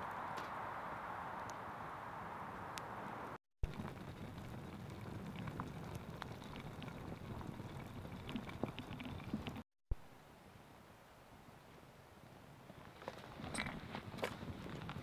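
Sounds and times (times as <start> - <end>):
food sizzling over campfire: 3.6 - 9.6
small pops and crackles: 3.6 - 9.6.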